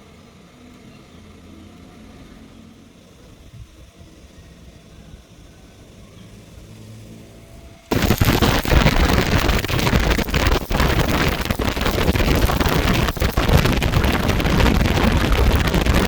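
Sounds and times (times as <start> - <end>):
low hum: 7.9 - 16.0
welding arc crackling: 7.9 - 16.0.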